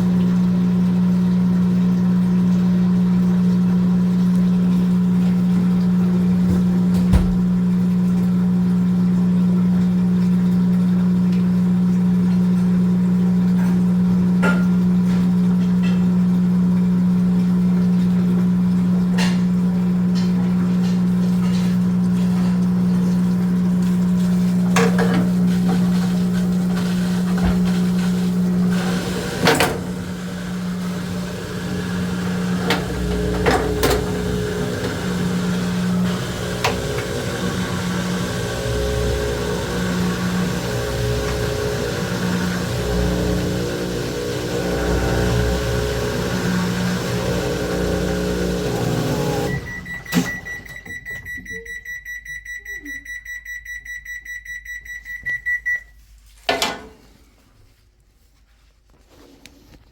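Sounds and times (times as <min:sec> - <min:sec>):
washing machine humming: 0:00.0 - 0:58.4.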